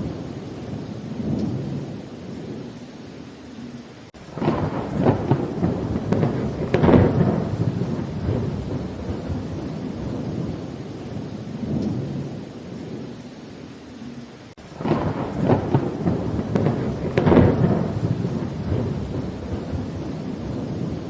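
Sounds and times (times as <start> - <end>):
steady rain: 0.0 - 21.0
rolling thunder: 4.2 - 13.1, 14.6 - 21.0.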